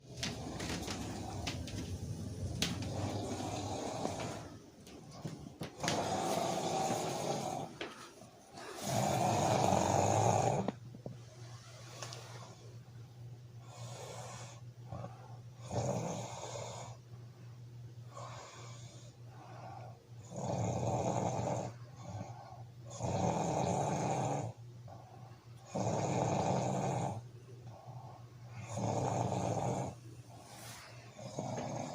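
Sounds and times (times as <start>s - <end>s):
quiet breaths: 0.0s - 23.1s, 23.7s - 31.9s
steady low hum: 0.0s - 31.9s
man snoring: 2.6s - 4.6s, 5.8s - 7.9s, 8.8s - 10.8s, 15.6s - 17.0s, 20.2s - 22.3s, 22.9s - 24.6s, 25.7s - 27.2s, 28.6s - 30.0s, 31.1s - 31.9s.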